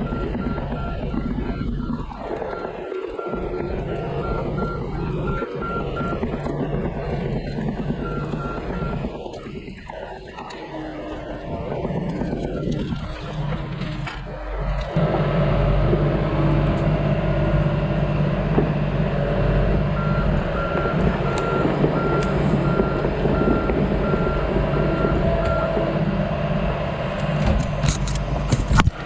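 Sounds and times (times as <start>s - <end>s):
travel alarm beeps: 0.0s - 9.9s, 20.0s - 25.8s
excavator diesel engine running: 0.0s - 29.0s.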